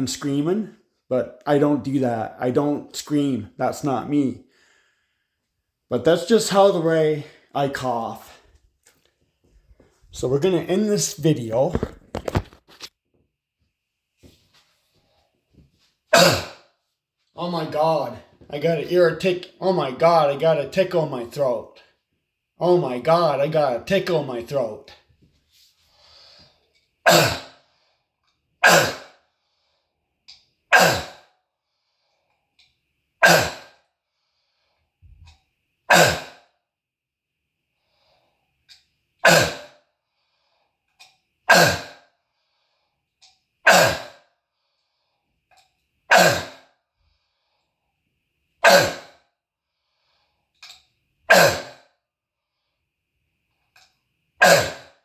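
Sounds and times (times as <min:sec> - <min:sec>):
man barking cough: 0:16.1 - 0:16.6, 0:27.1 - 0:27.5, 0:28.6 - 0:29.1, 0:30.7 - 0:31.2, 0:33.2 - 0:33.7, 0:35.9 - 0:36.4, 0:39.2 - 0:39.7, 0:41.5 - 0:42.0, 0:43.7 - 0:44.1, 0:46.1 - 0:46.6, 0:48.6 - 0:49.1, 0:51.3 - 0:51.8, 0:54.4 - 0:54.9.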